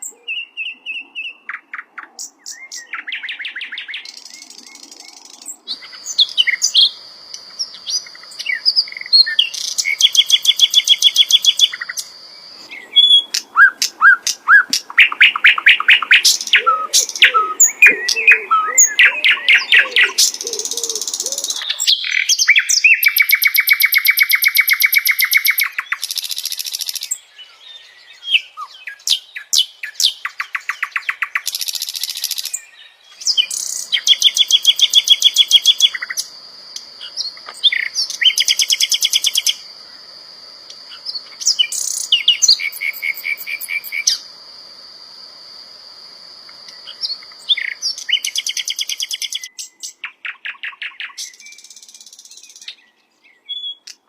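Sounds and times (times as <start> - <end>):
bird chirps: 0.0 - 40.0, 40.7 - 44.3, 46.5 - 54.0
flycatcher singing rattling trills: 4.0 - 27.3, 28.9 - 39.7, 46.5 - 50.0.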